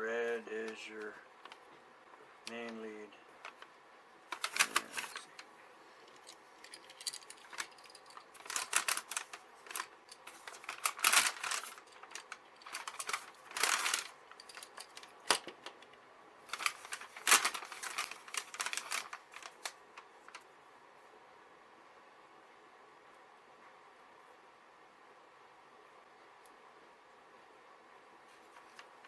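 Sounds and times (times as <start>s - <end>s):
hands rustling with wiring: 2.4s - 20.5s.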